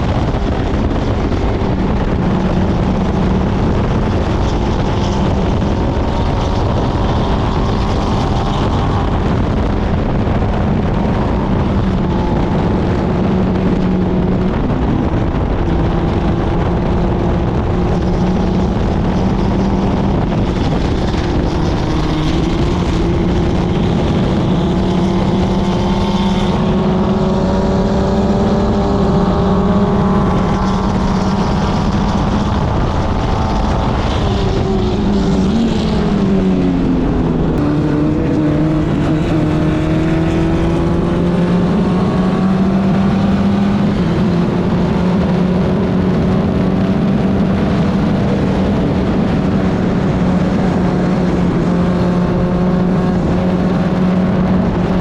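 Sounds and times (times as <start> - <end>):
race car engine at high revs: 0.0 - 55.0
wind rushing past: 0.0 - 55.0.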